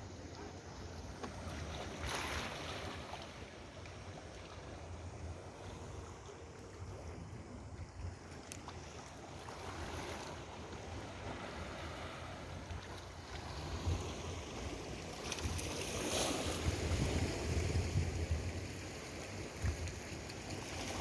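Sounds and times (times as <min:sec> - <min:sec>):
wind buffeting microphone: 0:16.5 - 0:18.6.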